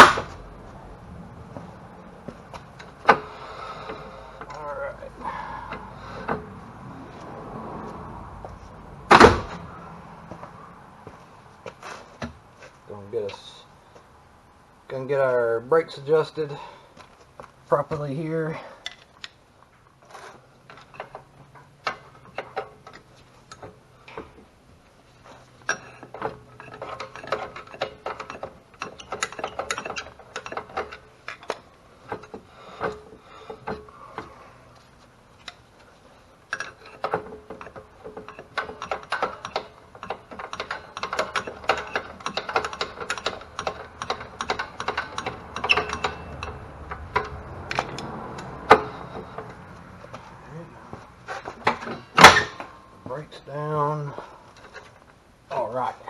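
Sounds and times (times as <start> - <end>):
rapid ratcheting clicks: 38.2 - 48.1.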